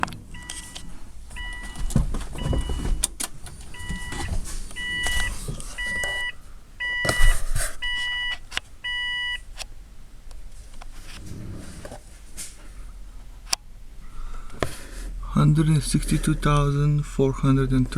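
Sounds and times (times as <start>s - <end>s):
handling thumps and rustling: 0.0s - 6.3s
car warning chime beeping: 0.0s - 9.5s.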